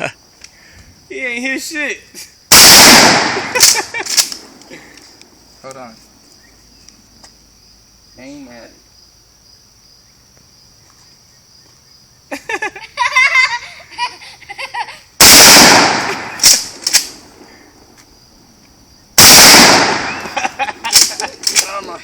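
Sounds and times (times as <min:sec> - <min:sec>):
crickets chirping: 0:00.0 - 0:22.0
shotgun blasts: 0:02.5 - 0:04.6, 0:15.2 - 0:17.2, 0:19.2 - 0:21.7.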